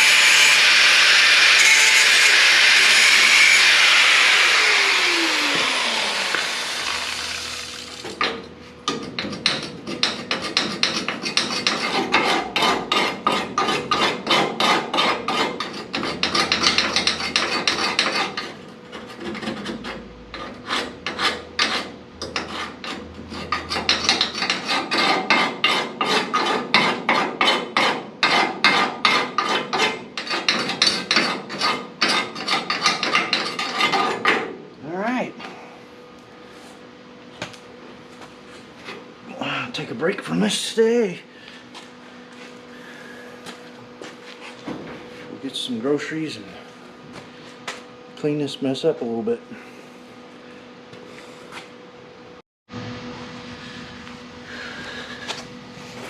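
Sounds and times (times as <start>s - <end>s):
hand tool rasping on metal: 0.0s - 7.9s, 8.9s - 34.4s
power tool spinning down: 0.0s - 8.1s.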